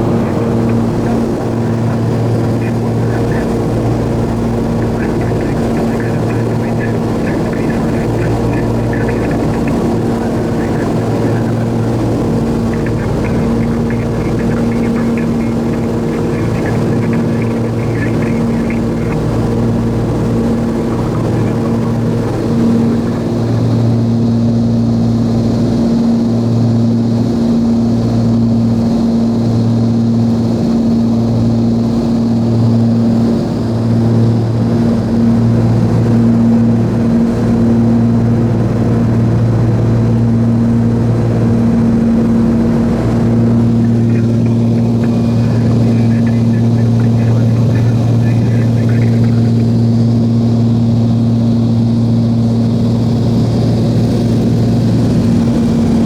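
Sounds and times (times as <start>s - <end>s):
aircraft engines and propellers droning: 0.0s - 56.0s.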